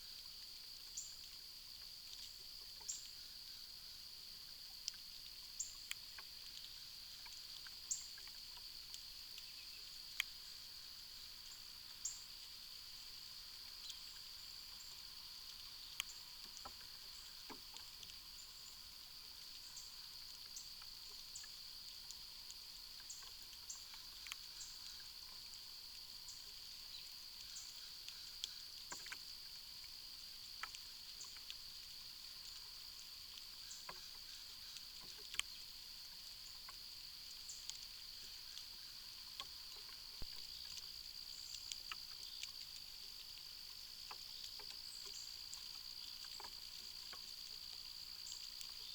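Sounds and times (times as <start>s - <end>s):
soft clicks and ticks: 4.8s - 9.5s, 10.1s - 10.4s, 22.0s - 26.0s, 33.3s - 35.6s, 37.6s - 48.8s.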